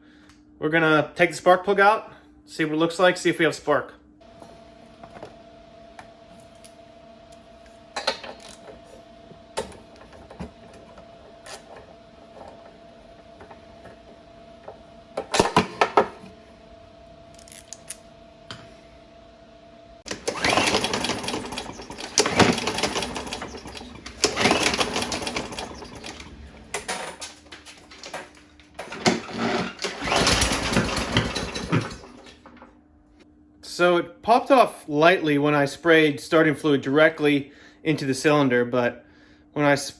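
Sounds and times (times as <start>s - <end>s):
steady hum: 0.0s - 39.8s
lawn mower engine popping: 20.1s - 32.5s.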